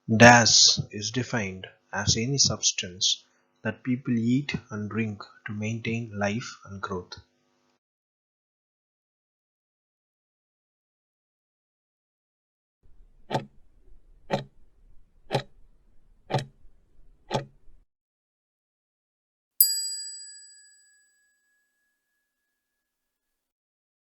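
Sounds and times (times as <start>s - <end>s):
clock ticks: 13.0s - 13.6s, 14.2s - 14.6s, 15.3s - 15.5s, 16.3s - 16.5s, 17.3s - 17.6s
bell ding: 19.6s - 22.5s.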